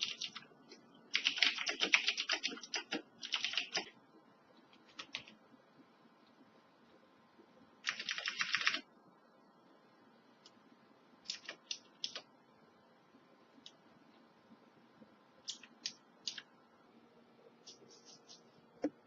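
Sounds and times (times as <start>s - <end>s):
mechanical keyboard typing: 0.0s - 0.5s, 1.1s - 4.0s, 4.9s - 5.4s, 7.8s - 8.9s, 11.2s - 12.3s, 15.4s - 16.5s.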